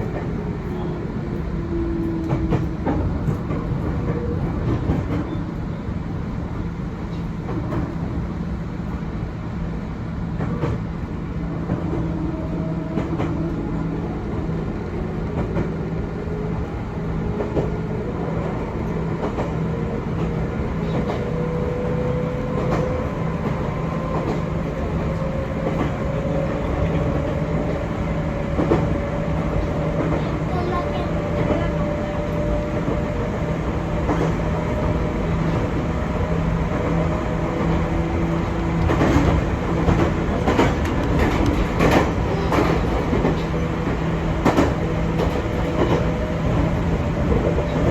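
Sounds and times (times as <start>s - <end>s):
train running noise: 0.0s - 47.9s
wheels clicking over rail joints: 37.6s - 47.9s.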